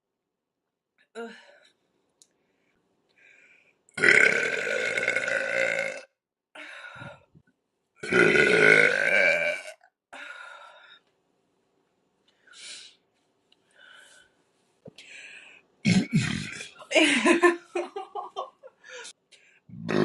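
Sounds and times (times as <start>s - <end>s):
woman burping loudly: 4.0s - 6.2s, 8.0s - 9.9s, 15.8s - 16.9s, 19.7s - 20.0s.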